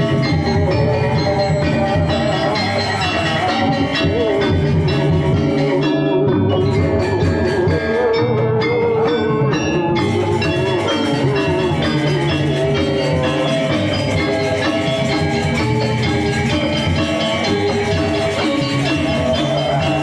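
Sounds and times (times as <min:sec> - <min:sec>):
metal percussion and drums music: 0:00.0 - 0:20.0.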